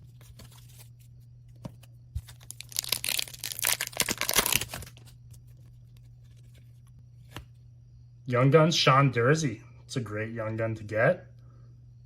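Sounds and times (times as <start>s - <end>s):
faint low hum: 0.0s - 12.0s
foil pack crinkling: 2.2s - 5.1s.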